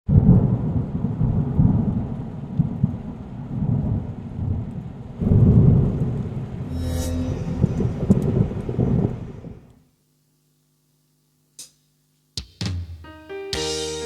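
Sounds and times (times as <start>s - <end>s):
loud low rumbling: 6.1s - 9.7s.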